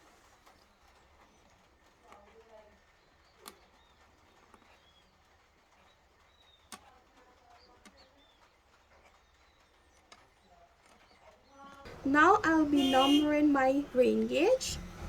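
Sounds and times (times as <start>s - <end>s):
low steady hum: 11.9s - 15.0s.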